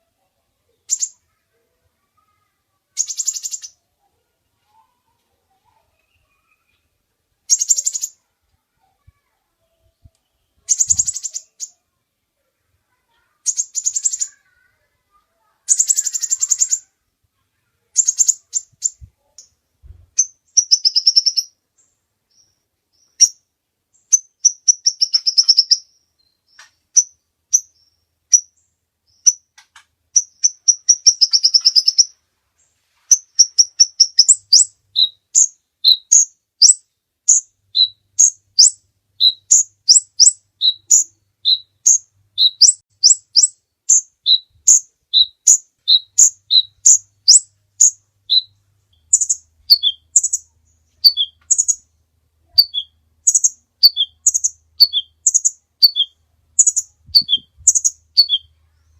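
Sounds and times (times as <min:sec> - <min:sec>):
sharp bird chirps: 0:00.8 - 0:01.4, 0:03.0 - 0:03.8, 0:07.5 - 0:08.2, 0:10.4 - 0:11.8, 0:13.3 - 0:14.7, 0:15.7 - 0:16.9, 0:18.0 - 0:19.6, 0:20.2 - 0:23.4, 0:24.0 - 0:29.5, 0:30.2 - 0:32.2, 0:33.1 - 0:51.9, 0:52.5 - 0:58.9
high rapid bird trills: 0:02.0 - 0:03.8, 0:07.5 - 0:09.3, 0:10.6 - 0:11.9, 0:12.9 - 0:17.0, 0:17.6 - 0:19.5, 0:20.2 - 0:21.6, 0:24.0 - 0:25.9, 0:30.2 - 0:32.2, 0:33.1 - 0:58.9.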